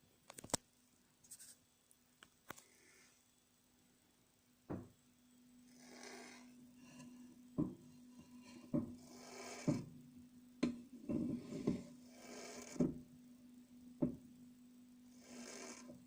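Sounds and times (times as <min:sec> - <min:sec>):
steady low hum: 0:04.7 - 0:16.0
soft hissing swells: 0:05.6 - 0:10.1, 0:11.3 - 0:12.8.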